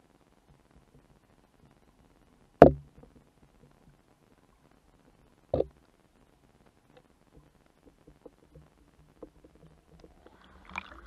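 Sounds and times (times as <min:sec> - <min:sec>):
muffled underwater ticks and pops: 0:00.0 - 0:11.0.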